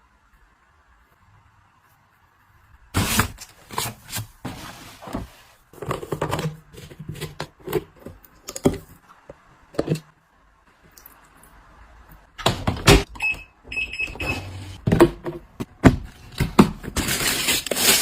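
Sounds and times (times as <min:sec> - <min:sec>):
household items rustling: 0:03.0 - 0:09.0, 0:14.5 - 0:18.0.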